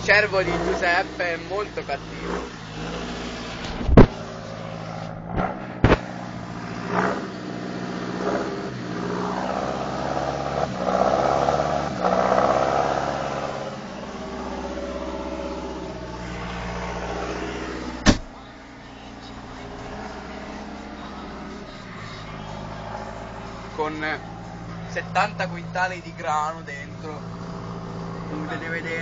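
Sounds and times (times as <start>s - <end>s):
tractor diesel engine running: 0.0s - 29.0s
sharp knocks: 18.0s - 18.3s.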